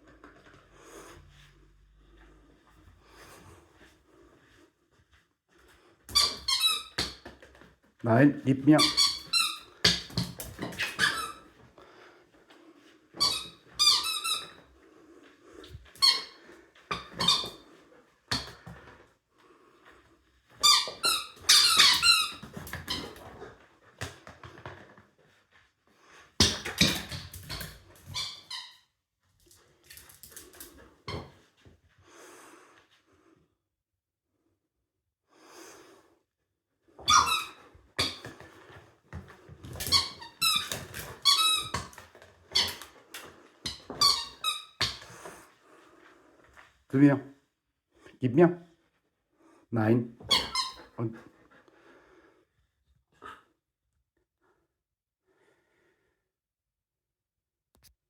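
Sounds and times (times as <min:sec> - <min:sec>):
squeaky toy squeaking: 0:06.1 - 0:07.1, 0:08.8 - 0:09.7, 0:10.8 - 0:11.4, 0:13.2 - 0:14.6, 0:16.0 - 0:17.6, 0:20.6 - 0:23.1, 0:37.0 - 0:38.2, 0:43.7 - 0:45.0, 0:50.3 - 0:51.0.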